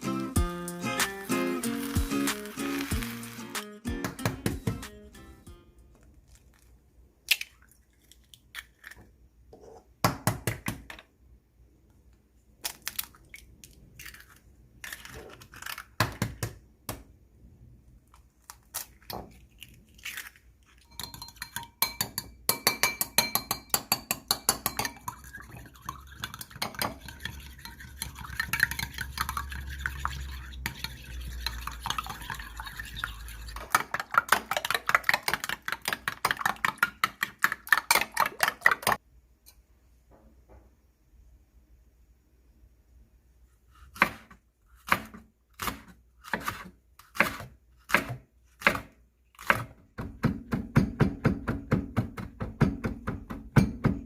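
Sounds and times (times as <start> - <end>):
eggs being beaten in a bowl: 20.9 - 39.0
knocks and clinks in a bowl: 20.9 - 39.0, 53.5 - 54.0.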